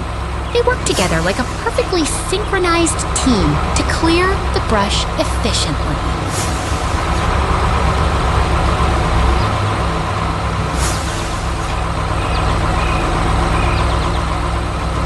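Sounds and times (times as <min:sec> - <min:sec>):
diesel machinery engine rumble: 0:00.0 - 0:15.0
brief hiss: 0:10.7 - 0:11.8.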